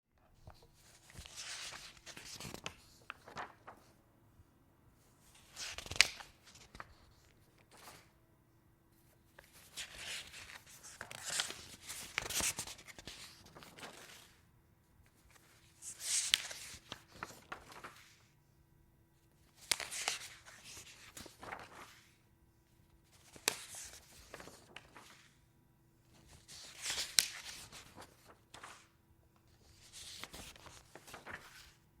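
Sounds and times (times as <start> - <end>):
paper pages turning: 0.2 - 3.9, 5.3 - 8.1, 9.3 - 14.4, 15.1 - 18.3, 19.4 - 22.2, 23.1 - 25.4, 26.2 - 28.9, 29.5 - 31.8.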